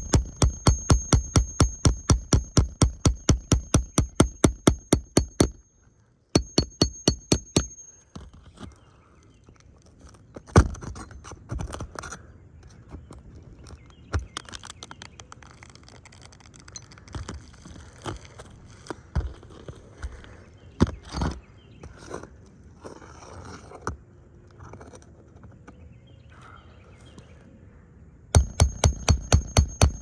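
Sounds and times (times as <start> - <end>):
knocks and scrapes on shingle roof: 0.0 - 5.6, 9.8 - 24.0.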